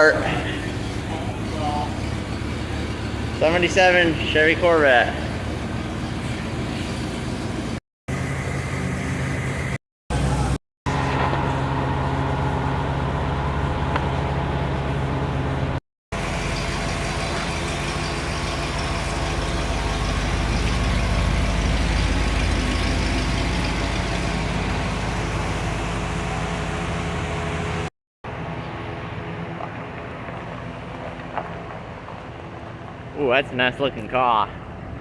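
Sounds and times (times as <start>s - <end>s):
car engine idling: 0.0s - 8.3s, 10.1s - 35.0s.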